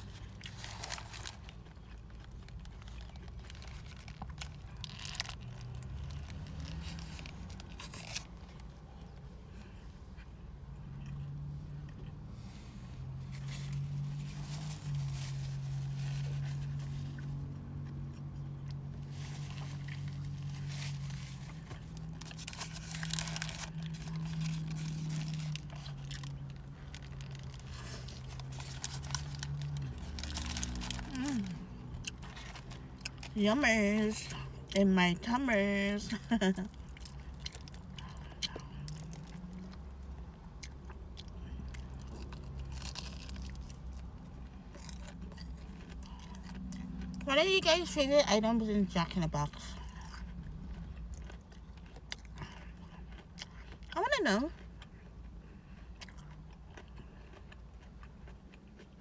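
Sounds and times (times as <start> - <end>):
paper wrappers crinkling: 0.0 - 8.4, 19.1 - 33.3
chewing and crunching food: 0.0 - 59.0.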